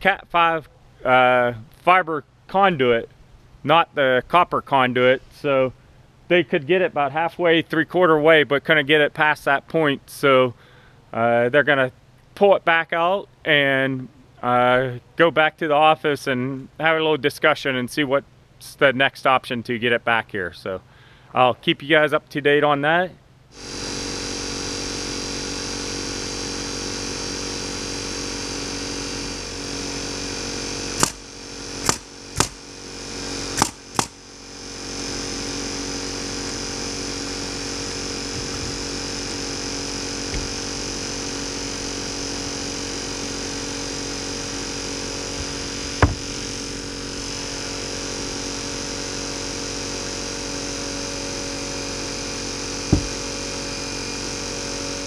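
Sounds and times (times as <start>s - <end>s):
motor drone: 23.5s - 55.0s
sharp clicks: 31.0s - 31.2s, 31.8s - 32.6s, 33.6s - 34.2s.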